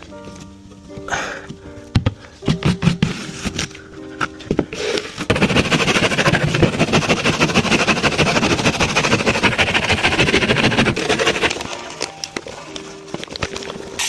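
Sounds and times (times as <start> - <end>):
texture sprayer pulsing: 5.3 - 11.6.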